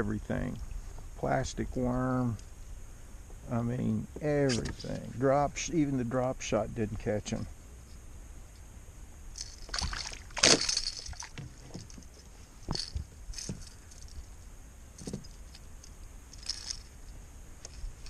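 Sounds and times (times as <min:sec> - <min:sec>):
short splashes or knocks: 0:09.6 - 0:12.0
water sloshing against kayak hull: 0:09.6 - 0:12.3.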